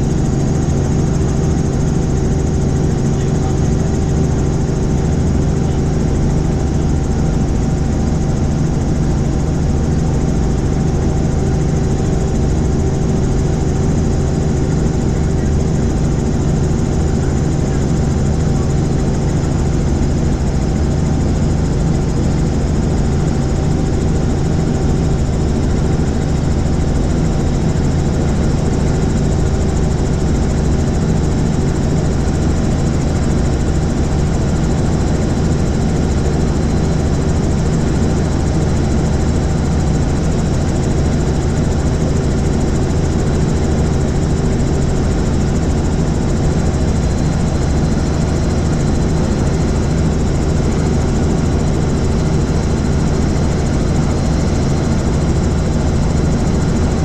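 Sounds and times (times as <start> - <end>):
helicopter engine and rotor drone: 0.0 - 57.0.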